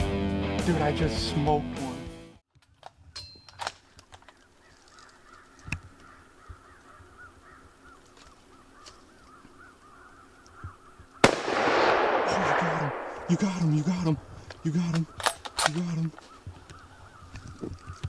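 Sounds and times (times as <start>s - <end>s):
crows cawing: 4.3s - 11.3s, 12.6s - 18.0s
rifle shot: 11.2s - 14.3s.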